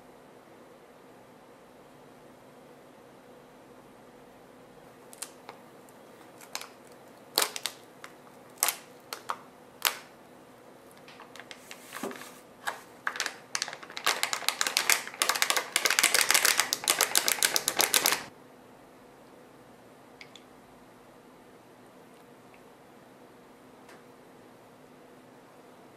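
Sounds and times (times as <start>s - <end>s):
small objects clicking: 13.1s - 18.3s
fast dense clicking: 13.6s - 18.3s.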